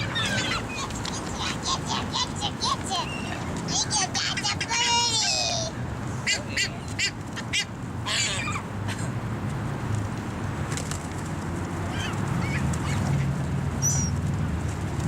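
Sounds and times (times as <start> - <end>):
birds calling: 0.0 - 8.7, 11.8 - 14.2.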